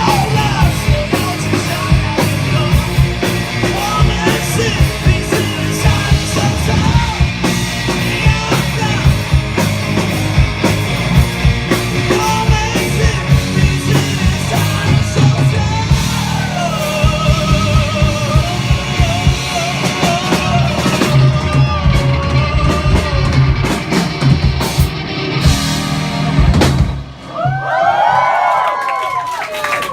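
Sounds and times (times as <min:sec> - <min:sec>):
person singing: 0:00.0 - 0:09.4, 0:12.0 - 0:23.7
guitar: 0:00.0 - 0:27.8
bass guitar: 0:00.0 - 0:28.5
drum kit: 0:00.0 - 0:28.6.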